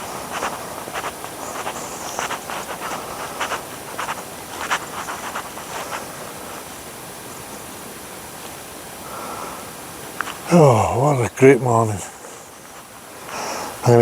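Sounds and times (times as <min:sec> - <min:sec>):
footsteps: 0:00.0 - 0:06.6.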